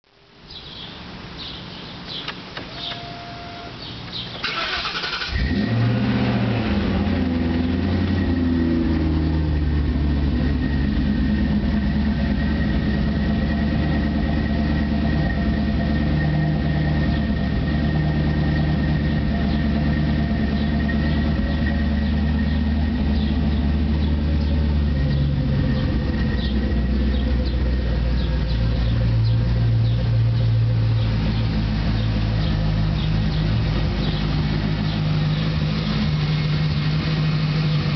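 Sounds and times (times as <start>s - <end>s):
car engine idling: 0.7s - 37.9s
engine cranking and starting: 4.4s - 7.4s.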